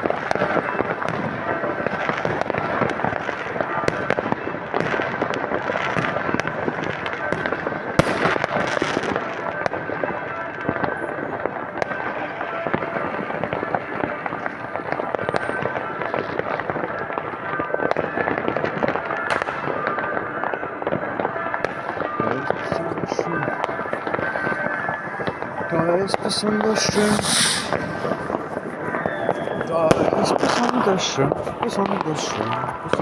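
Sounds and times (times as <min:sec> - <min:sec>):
fireworks crackling and popping: 0:00.0 - 0:33.0
loud firework bang: 0:08.0 - 0:09.2, 0:26.6 - 0:30.8.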